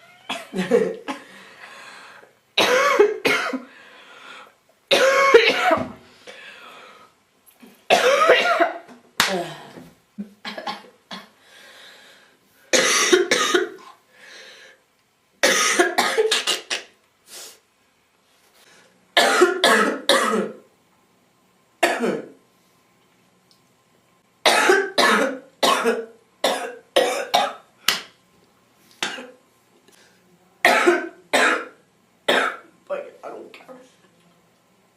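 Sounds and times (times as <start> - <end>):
girl coughing: 2.6 - 3.7, 4.9 - 5.9, 7.9 - 8.8, 12.8 - 13.8, 15.4 - 16.9, 19.2 - 20.6, 21.8 - 22.3, 24.5 - 27.6, 29.0 - 29.4, 30.6 - 32.6.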